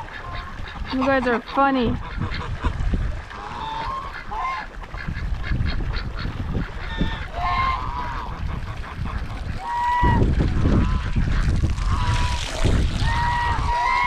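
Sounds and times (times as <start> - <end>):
geese honking: 0.0 - 2.7, 3.3 - 9.0, 13.1 - 14.0
wind buffeting microphone: 0.0 - 14.0.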